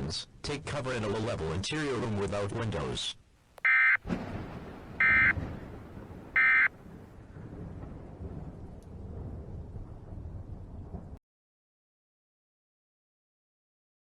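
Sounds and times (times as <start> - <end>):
digital data bursts: 5.0 - 5.3, 6.4 - 6.7.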